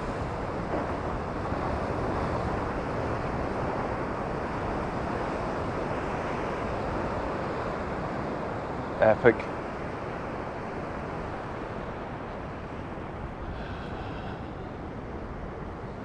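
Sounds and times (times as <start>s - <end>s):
waves breaking on rocks: 0.0s - 15.6s
wind on microphone: 10.0s - 16.0s.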